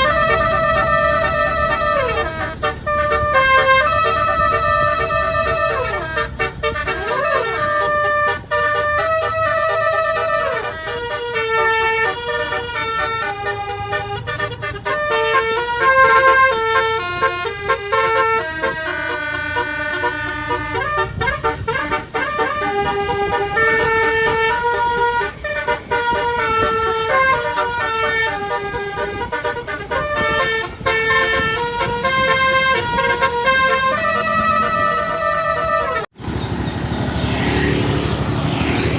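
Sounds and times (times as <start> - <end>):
bus horn playing a melody: 0.0 - 38.9
vehicle engine rumbling: 0.0 - 38.9.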